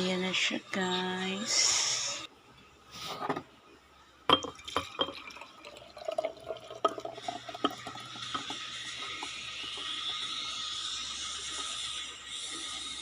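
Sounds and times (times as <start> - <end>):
glassware clinking: 4.3 - 9.3
liquid pouring into a glass: 4.3 - 10.4.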